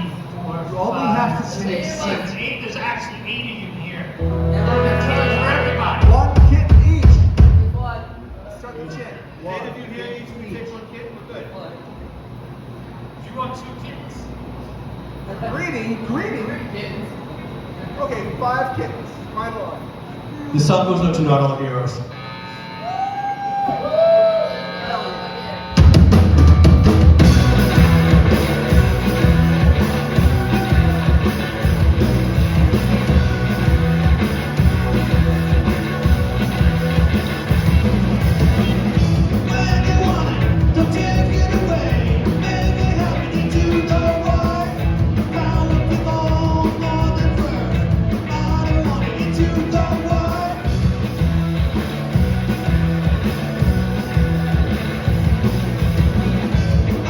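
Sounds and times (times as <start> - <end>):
punk band playing live: 4.2 - 8.0, 25.6 - 57.0
shouted vocals: 22.7 - 25.4, 26.4 - 34.5.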